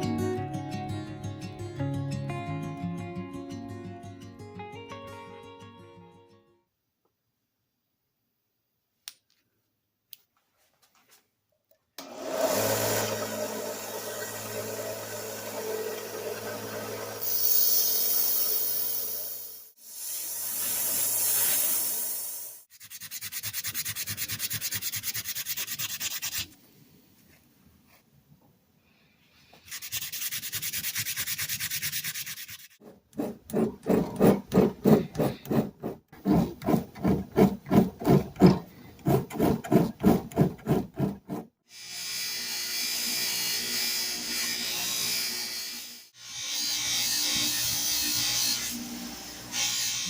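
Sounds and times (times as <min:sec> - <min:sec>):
abrasive scrubbing on metal: 0:29.7 - 0:41.5.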